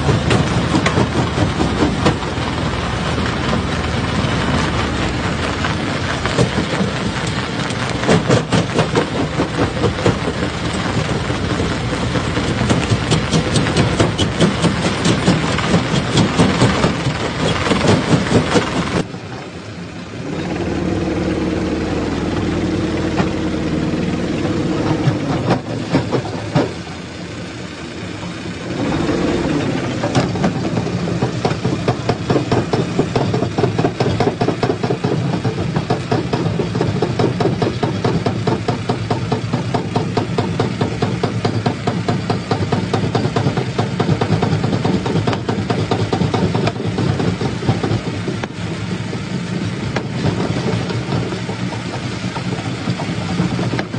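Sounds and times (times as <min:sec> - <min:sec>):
heavy engine drone: 0:00.0 - 0:53.9
rock crushing rattle: 0:03.0 - 0:19.1.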